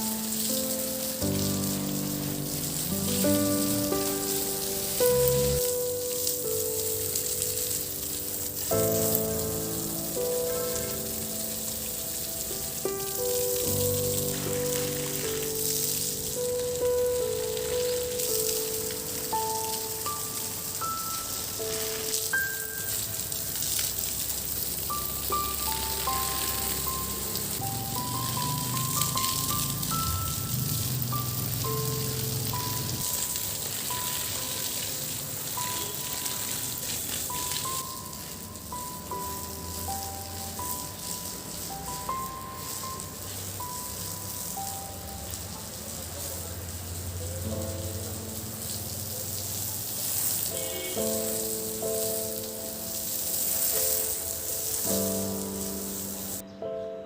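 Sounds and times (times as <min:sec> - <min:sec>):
soft held chords: 0:00.0 - 0:36.0, 0:50.6 - 0:57.0
steady hiss: 0:00.0 - 0:56.5.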